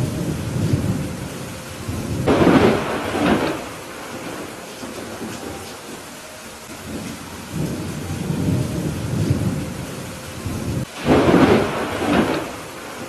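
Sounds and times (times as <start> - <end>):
crackling thunderclap: 0.0 - 13.0
heavy rain: 0.0 - 13.0
low rumble of thunder: 0.0 - 13.0.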